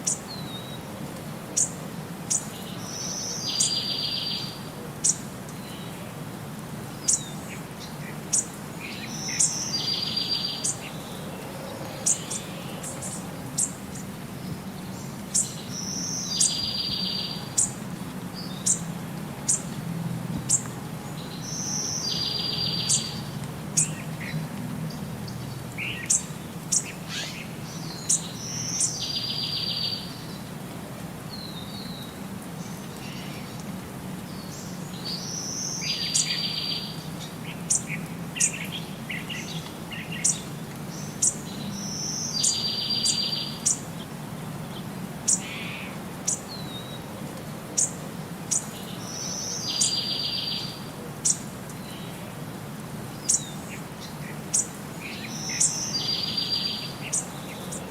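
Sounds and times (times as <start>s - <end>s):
songbirds chirping and trilling: 0.0s - 57.9s.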